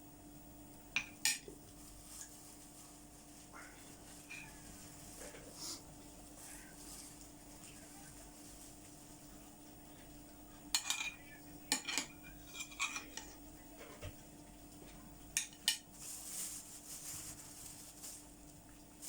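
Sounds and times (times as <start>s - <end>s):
cutlery clinking on dishes: 10.7s - 14.1s, 15.4s - 15.9s.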